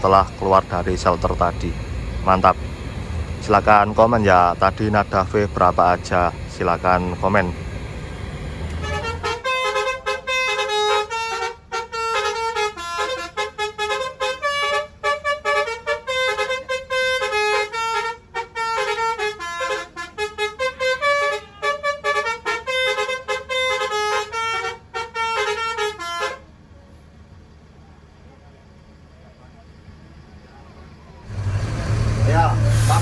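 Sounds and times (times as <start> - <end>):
musical air horn melody: 8.8 - 26.4.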